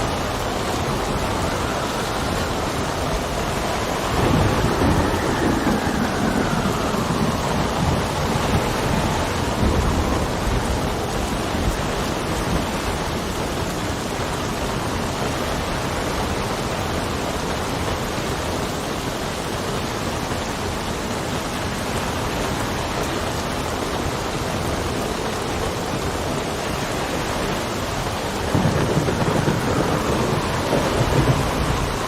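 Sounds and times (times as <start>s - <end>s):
thunder rumbling: 0.0s - 16.7s, 24.1s - 32.0s
heavy rain: 0.0s - 32.0s.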